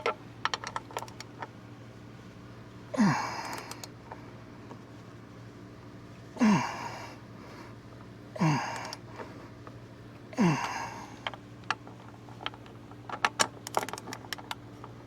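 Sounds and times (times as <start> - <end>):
man grunting with effort: 3.0 - 3.8, 6.4 - 7.2, 8.4 - 9.0, 10.3 - 11.2
faint clicks: 3.4 - 4.0, 8.7 - 9.3.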